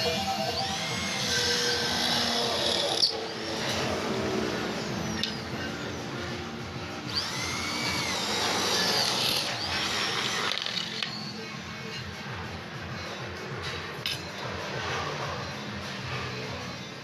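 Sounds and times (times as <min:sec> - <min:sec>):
power tool whining on steel: 0:00.0 - 0:12.0.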